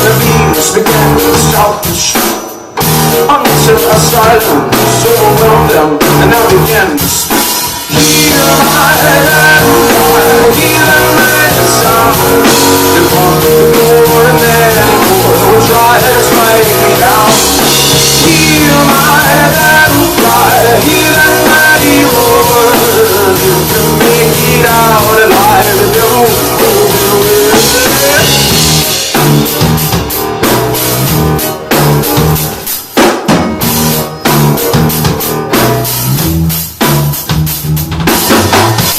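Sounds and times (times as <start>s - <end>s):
drum hits: 0.0s - 38.9s
rock band playing: 0.0s - 38.9s.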